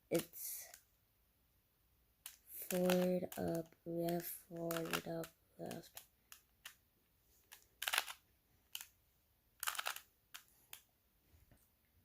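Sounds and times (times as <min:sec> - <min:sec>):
puzzle cube faces clicking: 0:00.1 - 0:00.9, 0:02.2 - 0:06.8, 0:07.4 - 0:09.0, 0:09.6 - 0:10.9.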